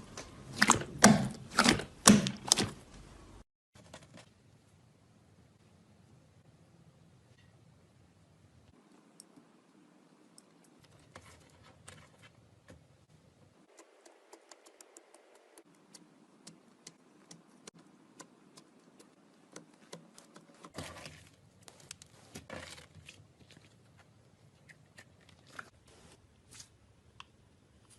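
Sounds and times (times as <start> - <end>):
squishy slime bursts: 0.5 - 2.8.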